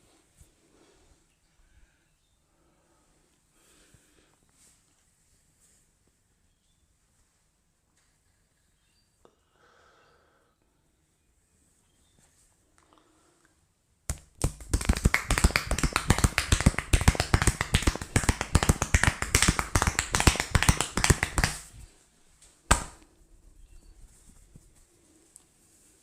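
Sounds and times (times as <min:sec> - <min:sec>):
hands tapping on head: 0:14.1 - 0:21.8, 0:22.7 - 0:23.0.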